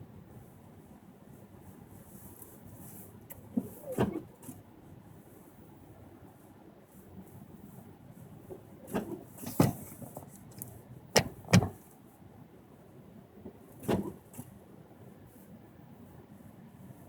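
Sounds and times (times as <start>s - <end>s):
knocks and clunks: 11.2s - 11.8s.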